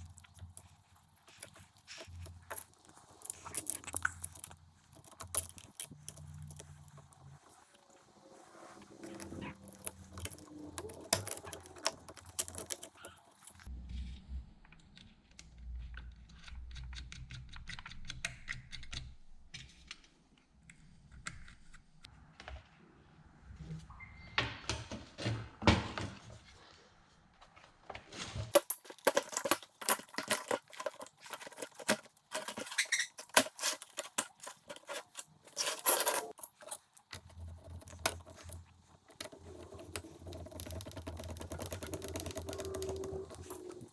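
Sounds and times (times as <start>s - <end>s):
tools clicking and rattling: 0.0s - 7.2s, 9.0s - 13.7s, 28.5s - 43.9s.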